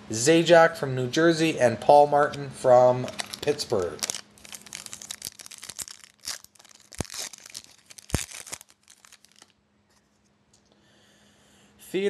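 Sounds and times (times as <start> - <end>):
foil wrapper tearing and crinkling: 3.0 - 9.6.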